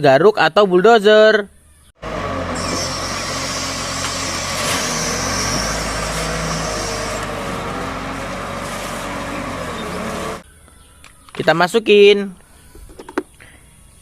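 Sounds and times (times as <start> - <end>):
earthmoving machine engine running: 2.0 - 10.4.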